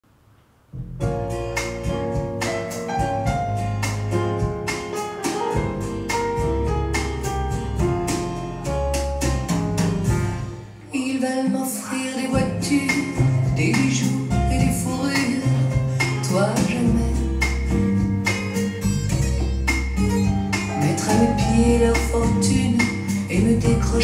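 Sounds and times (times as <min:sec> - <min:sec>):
pop music over speaker: 0:10.9 - 0:24.0.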